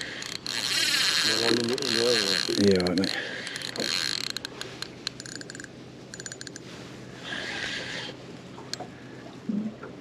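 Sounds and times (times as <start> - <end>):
fishing reel clicking: 0.0 - 6.6.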